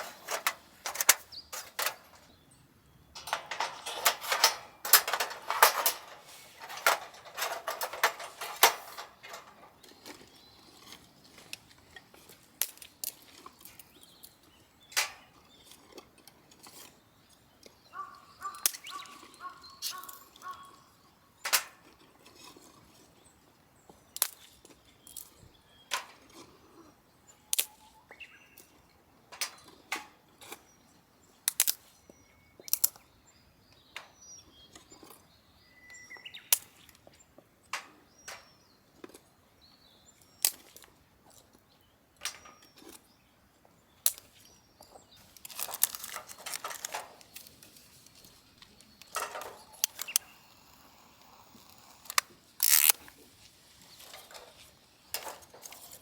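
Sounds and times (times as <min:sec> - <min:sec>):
sharp clicks and knocks: 0:00.0 - 0:02.3, 0:03.2 - 0:09.8, 0:49.0 - 0:50.3.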